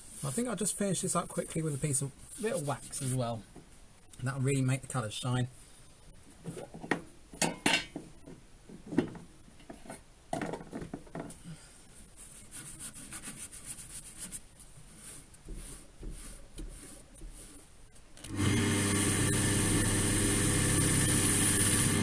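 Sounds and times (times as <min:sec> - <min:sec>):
hand rubbing wax on wood: 0:01.7 - 0:03.4, 0:12.0 - 0:17.8.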